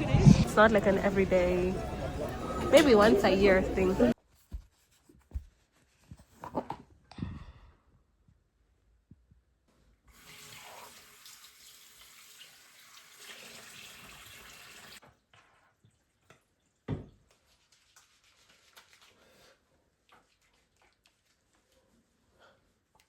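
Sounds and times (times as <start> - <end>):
water running from a tap: 10.1 - 15.0.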